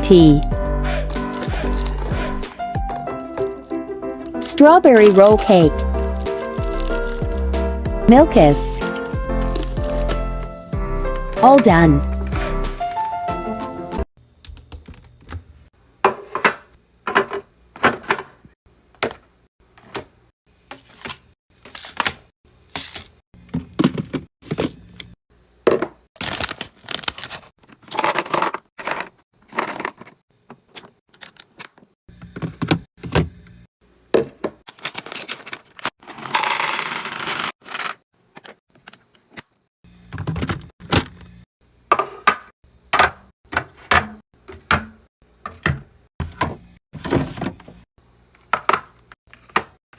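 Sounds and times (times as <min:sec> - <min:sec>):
packaged drinks knocking and clattering: 0:23.5 - 0:24.8, 0:25.7 - 0:26.4
packaging rustle: 0:26.2 - 0:28.4.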